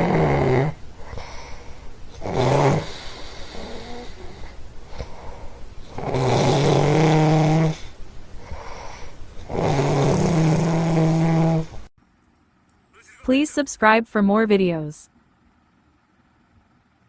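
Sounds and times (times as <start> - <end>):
dog snoring: 0.0 - 11.9.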